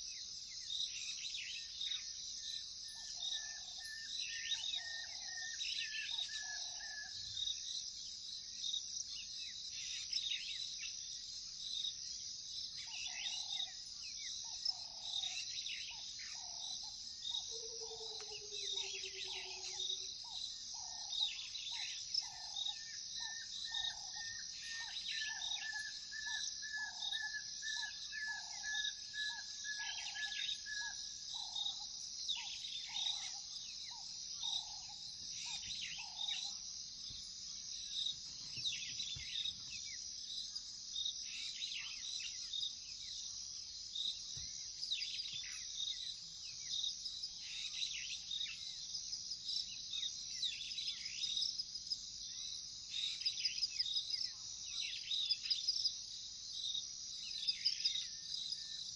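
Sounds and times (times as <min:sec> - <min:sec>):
crickets chirping: 0:00.0 - 0:58.9
bird calls: 0:02.9 - 0:07.3, 0:12.8 - 0:37.2.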